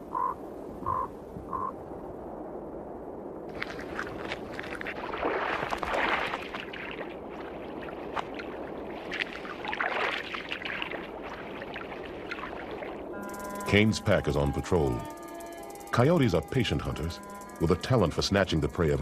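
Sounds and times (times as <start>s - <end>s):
water sloshing and splashing: 3.5s - 13.2s.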